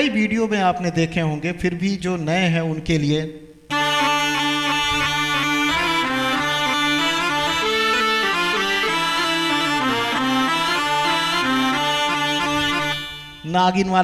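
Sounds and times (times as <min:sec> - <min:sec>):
reedy keyboard melody over drone: 0:03.7 - 0:13.6.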